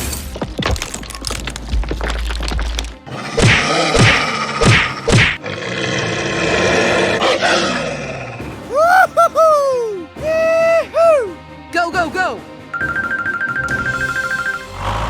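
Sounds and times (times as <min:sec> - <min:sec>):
background music: 0:00.0 - 0:15.0
animal-like roaring: 0:03.1 - 0:08.6, 0:14.7 - 0:15.0
high-pitched cartoonish voice: 0:08.7 - 0:11.4.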